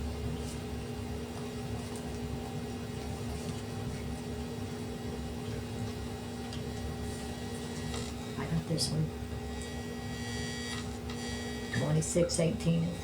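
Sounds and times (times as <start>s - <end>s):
appliance hum: 0.0s - 13.0s.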